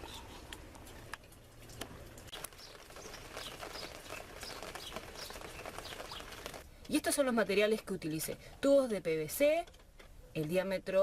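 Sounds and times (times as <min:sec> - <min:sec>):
rain dripping: 0:00.0 - 0:06.7
small birds chirping: 0:02.3 - 0:06.6.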